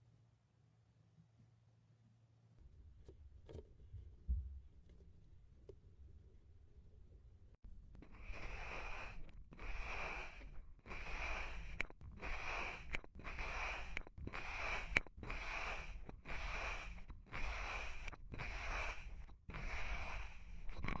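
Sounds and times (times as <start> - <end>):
clay rasping strokes: 7.9 - 21.0.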